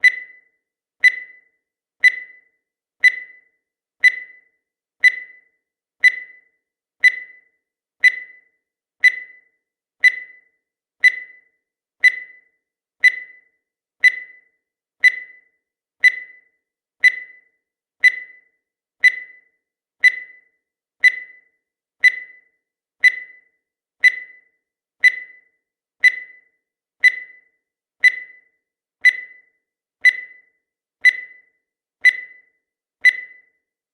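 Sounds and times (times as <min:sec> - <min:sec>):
high-pitched timer ticks: 0:00.0 - 0:33.8.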